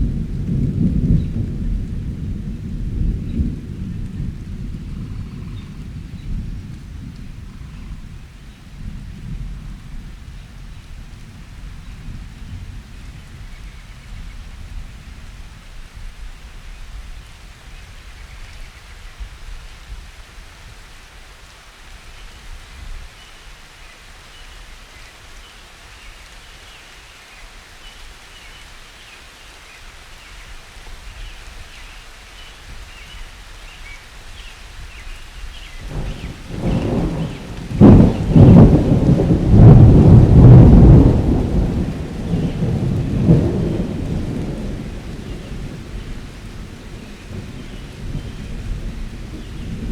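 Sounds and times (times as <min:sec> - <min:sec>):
thunder rumble: 0:00.0 - 0:17.5, 0:35.0 - 0:49.9
steady rain falling: 0:00.0 - 0:49.9.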